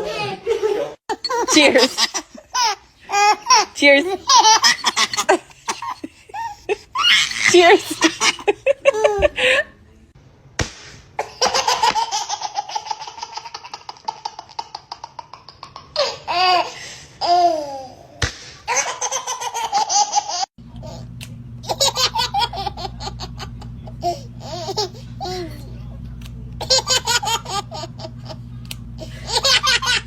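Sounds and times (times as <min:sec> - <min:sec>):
babies giggling: 0:00.0 - 0:09.6, 0:21.6 - 0:25.8, 0:26.6 - 0:30.0
baby squealing: 0:04.2 - 0:08.1
low steady hum: 0:20.6 - 0:30.0.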